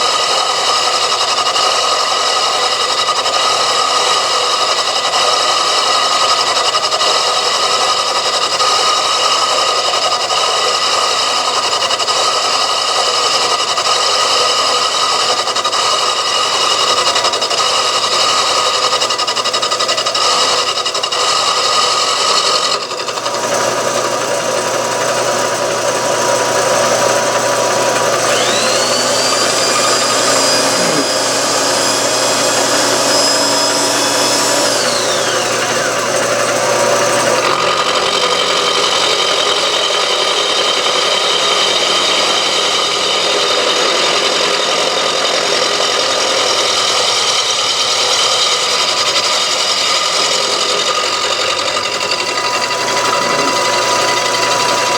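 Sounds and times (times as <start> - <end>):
milling machine cutting metal: 0.0 - 54.9
high motor whine: 23.1 - 39.1, 51.2 - 54.9.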